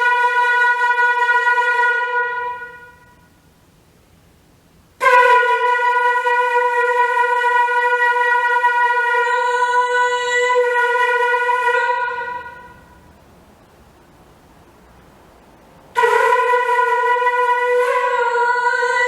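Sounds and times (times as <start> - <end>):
wind instrument long note: 0.0 - 3.3, 5.0 - 13.1, 16.0 - 19.0.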